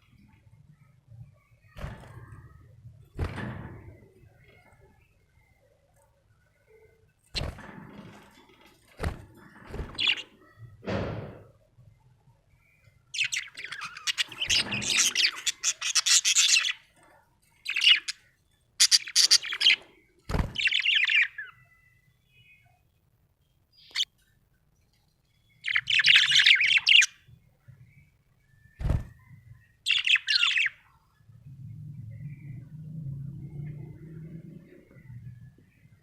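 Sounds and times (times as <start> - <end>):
budgerigar chirping and warbling: 13.2 - 16.9, 18.8 - 19.8, 25.6 - 27.2, 29.9 - 30.8.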